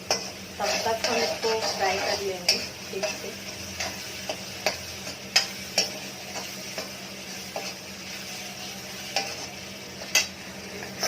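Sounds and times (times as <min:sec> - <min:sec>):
spatula tapping and scraping pan: 0:00.0 - 0:07.8, 0:09.0 - 0:11.0
vegetables sizzling in oil: 0:00.0 - 0:11.0.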